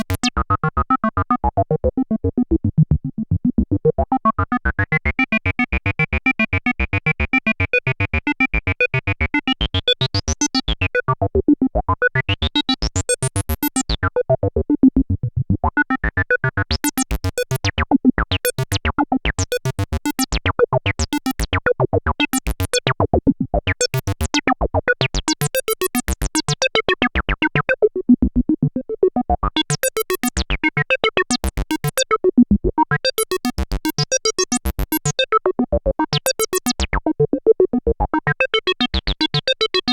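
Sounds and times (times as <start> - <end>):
synthesizer acid bass sequence: 29.5 - 37.1.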